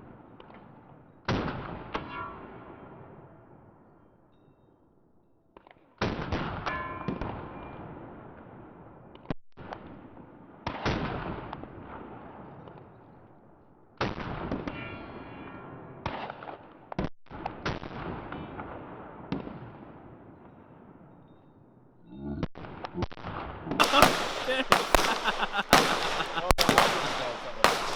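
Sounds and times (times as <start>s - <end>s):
echoing gunshots: 23.8s - 27.9s.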